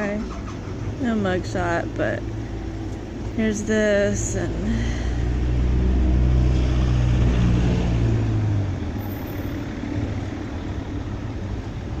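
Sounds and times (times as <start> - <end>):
engine rumble: 0.0 - 12.0.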